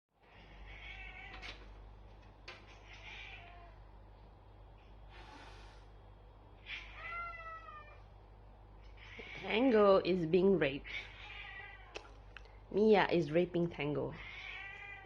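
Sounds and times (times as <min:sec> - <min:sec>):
cat meowing: 0:00.5 - 0:01.6, 0:02.7 - 0:03.8, 0:06.6 - 0:08.0, 0:09.0 - 0:09.6, 0:10.8 - 0:12.0, 0:14.2 - 0:15.0.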